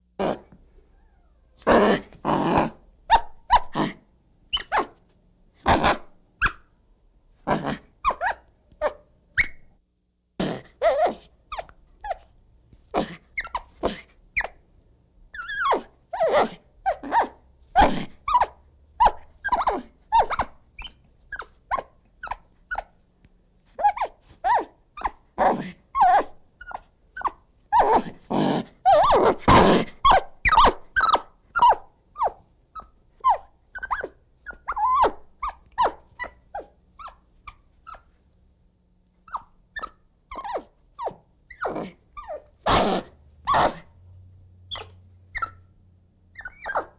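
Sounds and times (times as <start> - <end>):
monkey cries and chatters: 7.5 - 9.6, 15.4 - 22.9, 23.8 - 38.1, 39.3 - 43.9, 44.7 - 45.6, 46.4 - 46.9.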